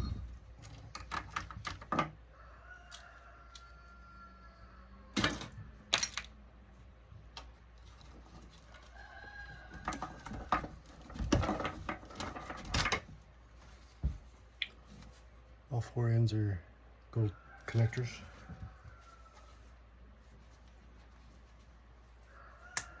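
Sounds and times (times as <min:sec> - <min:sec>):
rooster crowing: 0:02.3 - 0:05.7, 0:08.7 - 0:10.6, 0:17.3 - 0:19.8, 0:22.2 - 0:23.0.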